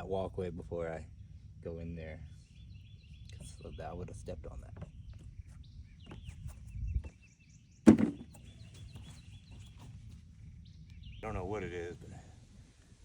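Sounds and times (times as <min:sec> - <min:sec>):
birds chirping faintly: 0:00.0 - 0:13.0
heavy thunk: 0:07.9 - 0:08.3.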